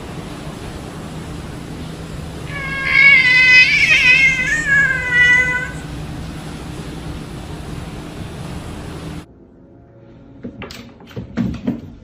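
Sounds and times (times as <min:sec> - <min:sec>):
steady low hum: 0:00.0 - 0:10.1
cat meowing: 0:02.5 - 0:05.8.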